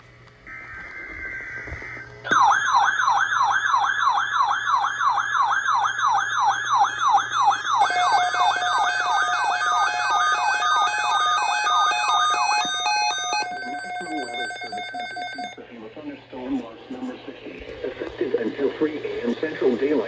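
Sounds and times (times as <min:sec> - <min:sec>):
digital header tones: 0:06.4 - 0:15.6
stuttering beeps: 0:06.8 - 0:15.6
sweeping electronic attention tone: 0:07.0 - 0:15.6.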